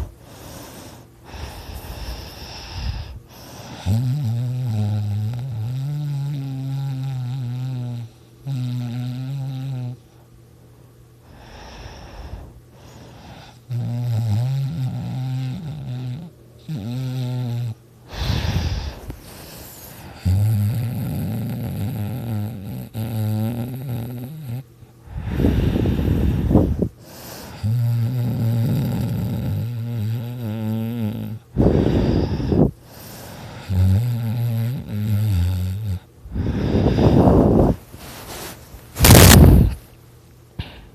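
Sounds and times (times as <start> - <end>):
soft breathing: 0.0 - 4.0, 11.2 - 13.7, 18.0 - 20.2, 24.9 - 27.7, 31.4 - 33.8, 36.2 - 39.9
person snoring: 0.0 - 10.0, 11.3 - 37.8.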